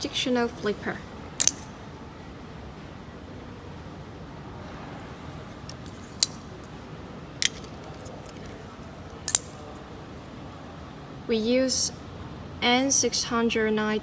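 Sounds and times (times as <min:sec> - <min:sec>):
folding knife clicking open and shut: 0:01.4 - 0:01.7, 0:09.2 - 0:09.6.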